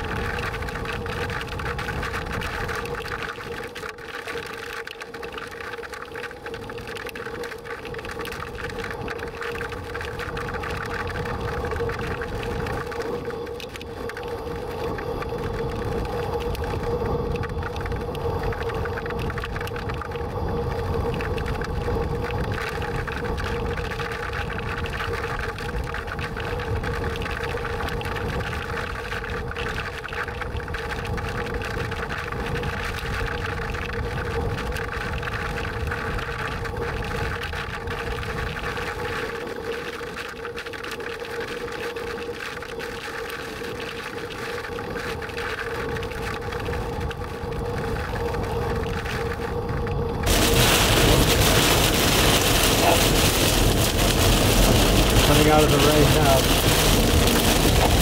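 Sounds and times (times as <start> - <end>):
vehicle cabin road noise: 50.3 - 58.0.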